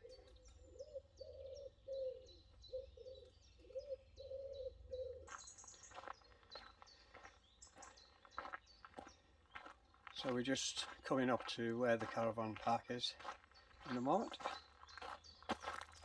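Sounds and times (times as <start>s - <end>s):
dove cooing: 0.0s - 5.4s
bird chirping song: 0.0s - 16.0s.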